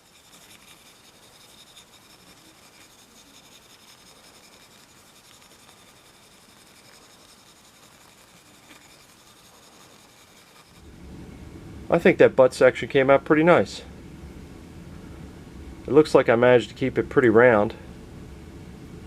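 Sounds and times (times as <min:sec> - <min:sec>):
steel wool scratching plastic: 0:00.0 - 0:10.9.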